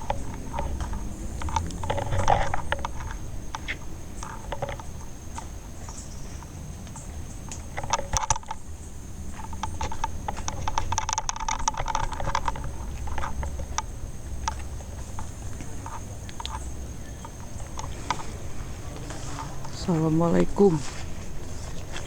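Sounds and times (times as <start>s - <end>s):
footsteps crunching through dry leaves: 14.0s - 22.0s.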